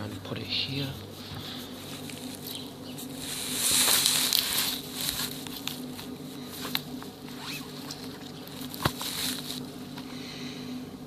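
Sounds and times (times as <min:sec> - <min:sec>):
camera handling rustling and scraping: 0:01.9 - 0:10.0.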